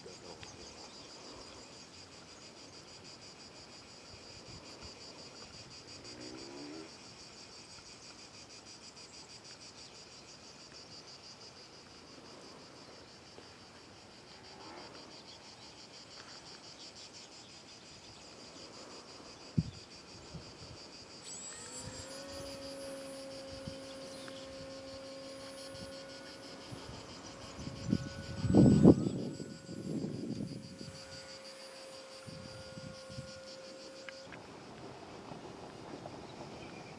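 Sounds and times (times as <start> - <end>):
insects chirping: 0.0 - 36.9
electric glider motor hum: 20.3 - 36.9.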